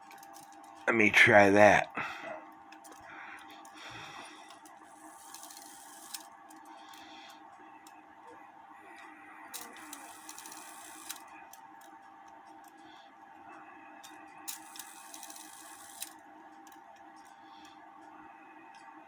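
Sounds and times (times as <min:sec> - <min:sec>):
rapid whirring clicks: 0:00.0 - 0:00.9, 0:02.4 - 0:19.0
sharp clock mechanism click: 0:09.6 - 0:11.3, 0:14.5 - 0:16.8.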